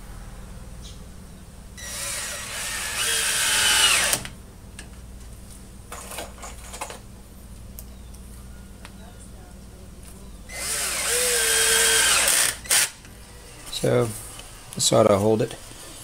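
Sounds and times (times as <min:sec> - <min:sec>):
power drill whine: 0:01.8 - 0:04.3, 0:10.5 - 0:13.7.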